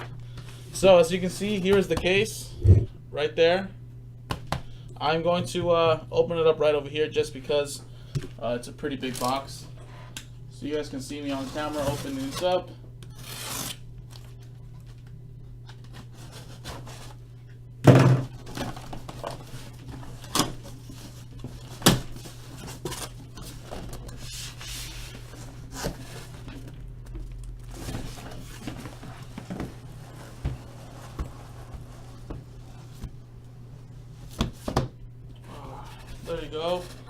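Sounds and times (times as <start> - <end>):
steady low hum: 0.0 - 37.0.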